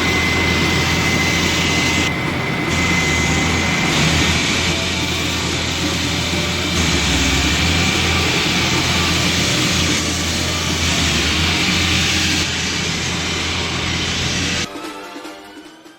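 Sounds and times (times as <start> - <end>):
saw engine drone: 0.0 - 14.7
saw grinding concrete: 2.7 - 14.7.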